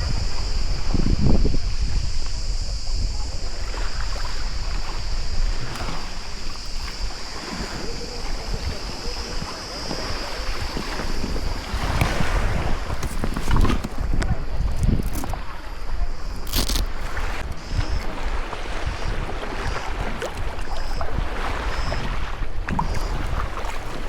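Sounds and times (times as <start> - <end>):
high-pitched hiss: 0.0 - 18.0
water lapping and splashing: 0.0 - 24.0
wind buffeting microphone: 0.0 - 24.0.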